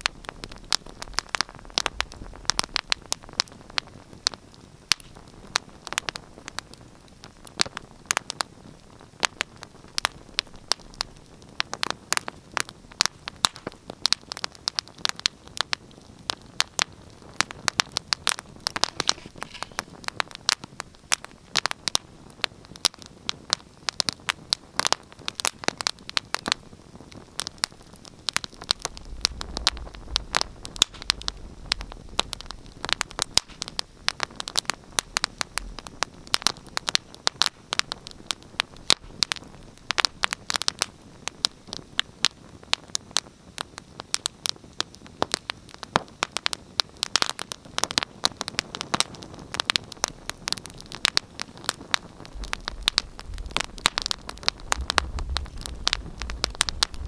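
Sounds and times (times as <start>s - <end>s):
wood fire crackling and popping: 0.0s - 57.0s
low rumble: 28.8s - 33.3s, 52.2s - 57.0s.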